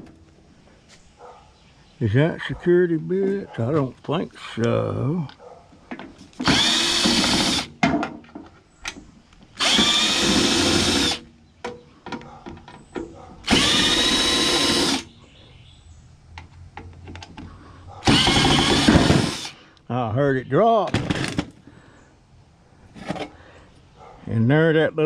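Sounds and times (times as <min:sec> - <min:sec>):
power drill spinning: 0:06.4 - 0:07.7, 0:09.6 - 0:11.2, 0:13.4 - 0:15.1, 0:18.0 - 0:19.6
handling clicks and knocks: 0:11.6 - 0:13.4, 0:16.3 - 0:17.6.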